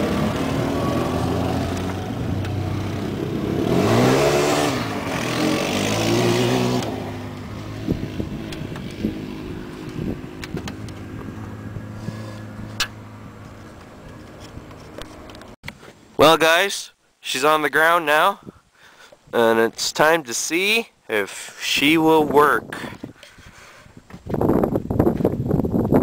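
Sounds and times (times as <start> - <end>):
engine revving and idling: 0.0 - 15.5.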